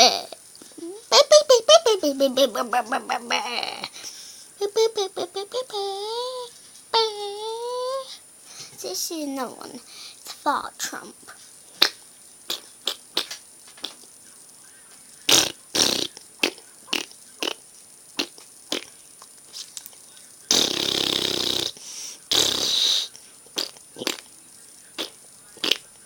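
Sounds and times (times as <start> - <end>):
child making fart noises: 0.0 - 4.0, 5.2 - 8.1, 11.8 - 14.0, 15.3 - 17.6, 18.2 - 18.9, 20.5 - 24.3, 25.0 - 25.8
sharp little clicks: 11.8 - 14.2.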